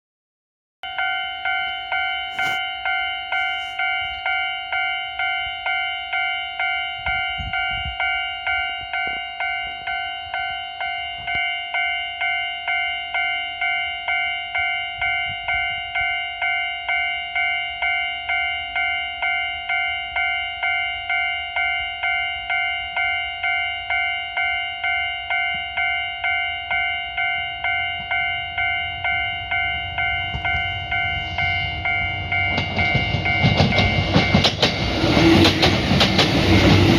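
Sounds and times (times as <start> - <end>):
level-crossing warning bell: 0.8 - 36.9
train rumble: 24.9 - 36.9.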